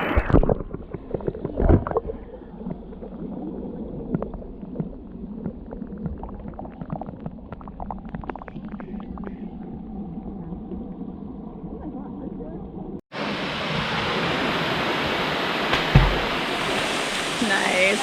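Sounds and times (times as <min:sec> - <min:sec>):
underwater bubbling: 0:00.0 - 0:13.0
underwater rumble of falling water: 0:00.0 - 0:18.0
underwater clicks and knocks: 0:00.2 - 0:02.8, 0:15.7 - 0:16.3.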